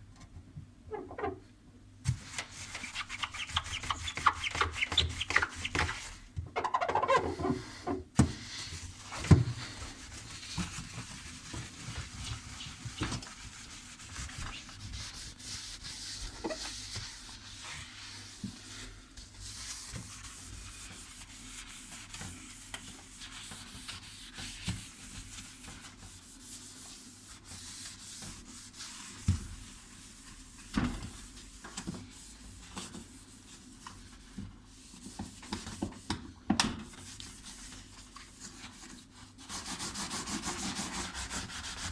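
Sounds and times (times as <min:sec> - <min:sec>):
scrubbing and rubbing: 0:09.7 - 0:18.8, 0:39.5 - 0:41.9.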